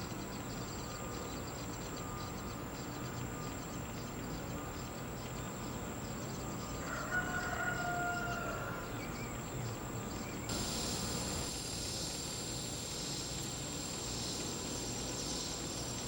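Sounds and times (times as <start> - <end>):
rooster crowing: 6.8 - 9.0
high insect drone: 10.5 - 16.0
loud high insect buzz: 10.5 - 16.0.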